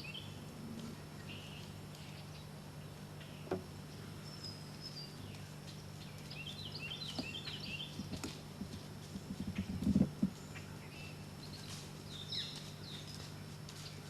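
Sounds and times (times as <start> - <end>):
steady low hum: 0.0 - 14.0
small bird chirping: 3.2 - 13.9.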